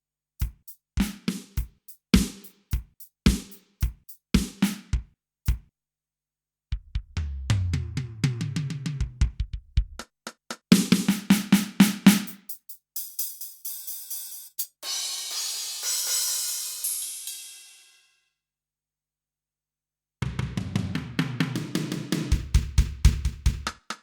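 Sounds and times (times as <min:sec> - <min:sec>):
cymbal strikes: 0:14.3 - 0:18.1
crash cymbal wash: 0:14.8 - 0:18.1.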